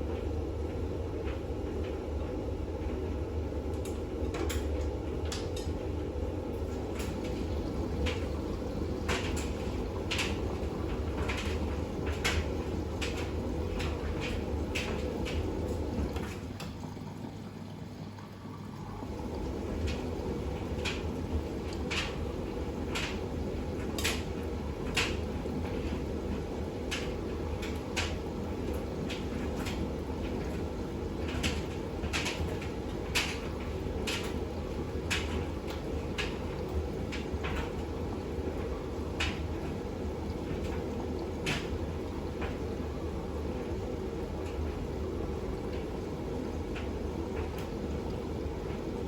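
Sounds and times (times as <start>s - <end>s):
low motor hum: 0.0s - 49.0s
water sloshing in washing machine: 0.0s - 49.0s
wet load clacking against drum: 6.9s - 16.7s, 19.2s - 42.8s.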